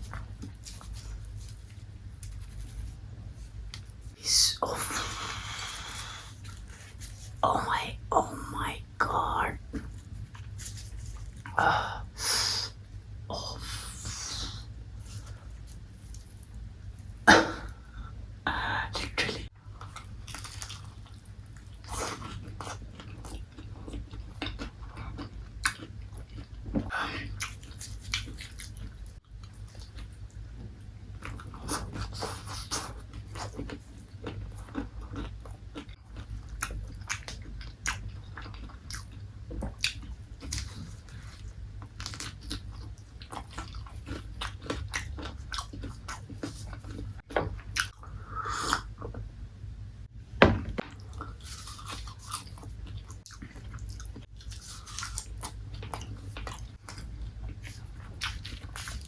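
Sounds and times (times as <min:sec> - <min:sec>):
chewing crispy fried chicken: 0:00.0 - 0:04.2, 0:09.6 - 0:11.6, 0:19.7 - 0:49.2, 0:51.0 - 0:59.0.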